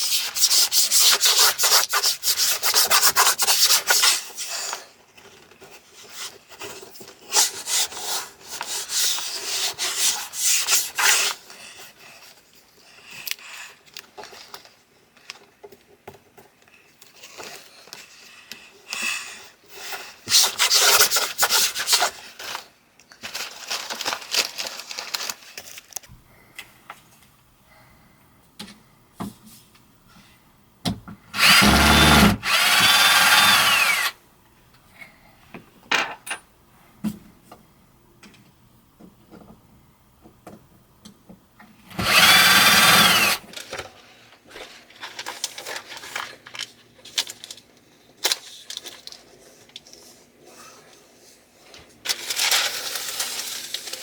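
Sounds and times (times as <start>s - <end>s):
power drill running: 31.4s - 34.2s, 41.9s - 43.4s.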